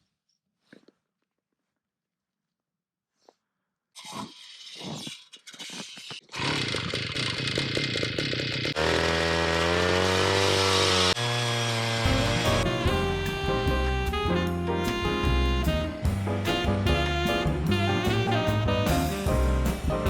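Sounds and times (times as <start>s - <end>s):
ice auger drilling: 6.3s - 12.7s
jazz music with saxophone: 12.1s - 20.0s.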